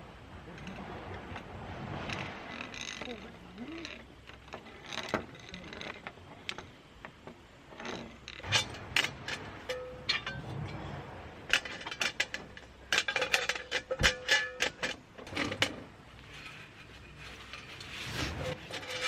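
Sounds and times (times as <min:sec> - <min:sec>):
camping gear clattering: 0:07.8 - 0:19.0.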